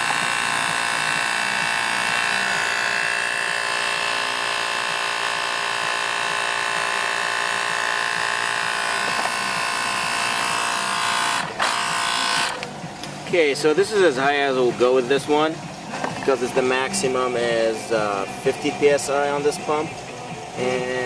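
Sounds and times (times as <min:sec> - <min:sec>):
electric tire inflator running: 0:00.0 - 0:21.0.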